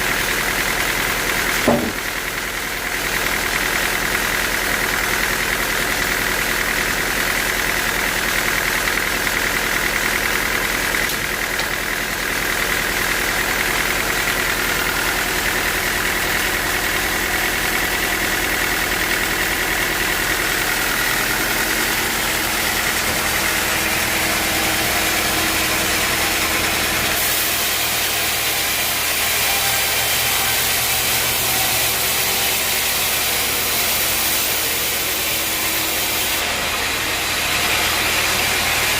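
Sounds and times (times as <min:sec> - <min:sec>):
sawmill engine running: 0:00.0 - 0:38.9.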